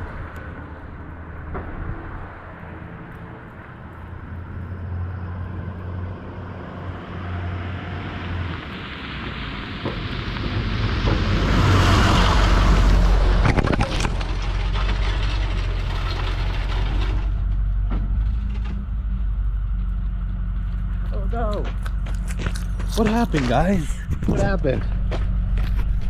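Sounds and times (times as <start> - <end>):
tyre and road noise: 0.0 - 26.0
truck engine running low: 3.3 - 26.0.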